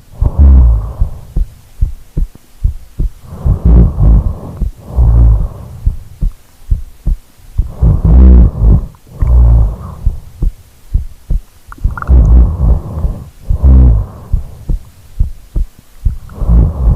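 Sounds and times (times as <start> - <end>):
person snoring: 0.1 - 1.3, 3.2 - 6.0, 7.6 - 10.3, 11.9 - 14.7, 16.2 - 16.9
short low thumps: 0.2 - 16.9.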